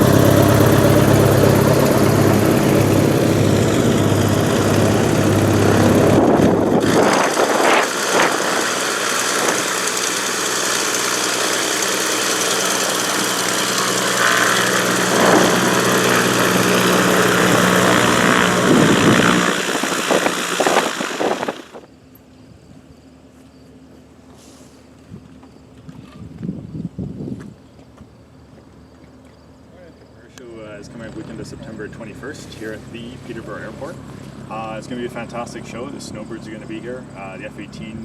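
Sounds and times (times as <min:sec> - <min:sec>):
propeller aircraft engine running: 0:00.0 - 0:21.9, 0:30.8 - 0:38.0.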